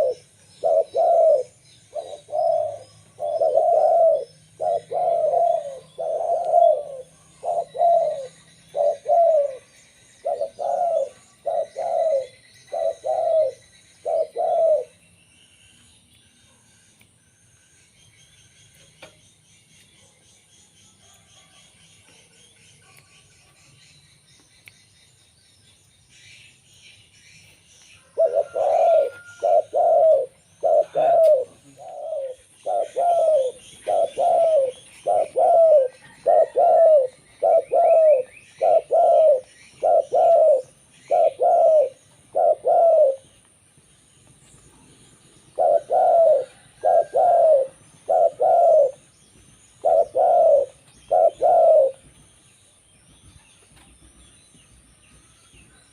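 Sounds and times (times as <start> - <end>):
dove cooing: 0.0 - 15.0, 28.0 - 43.4, 45.5 - 49.1, 49.8 - 52.1
small birds chirping faintly: 0.0 - 55.9.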